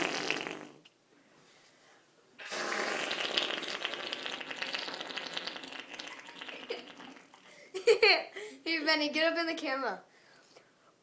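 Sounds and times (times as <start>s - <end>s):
fart noise: 0.0s - 0.9s, 2.4s - 7.5s.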